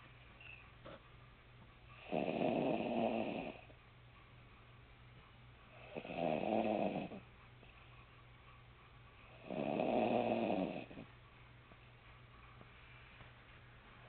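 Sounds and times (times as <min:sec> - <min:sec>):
faint steady hum: 0:00.0 - 0:14.0
rough snoring: 0:02.0 - 0:03.7, 0:05.8 - 0:07.2, 0:09.4 - 0:11.1.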